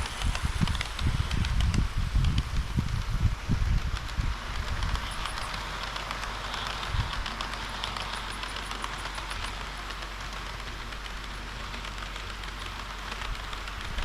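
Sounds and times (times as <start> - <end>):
model train rolling on track: 0.0 - 14.0.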